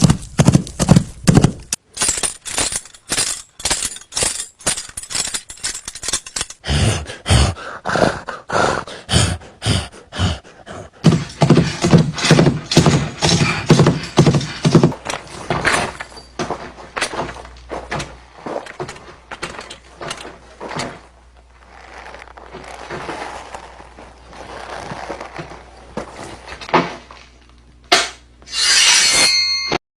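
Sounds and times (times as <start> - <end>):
sharp knocks and thuds: 0.0 - 1.8, 11.0 - 21.0
scratchy rubbing and scraping: 21.5 - 26.6.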